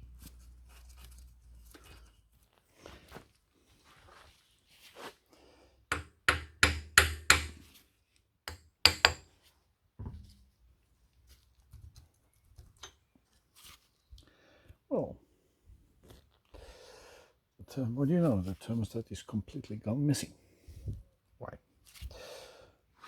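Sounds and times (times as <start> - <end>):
hand tool knocking on metal: 5.9 - 7.6, 8.5 - 9.3.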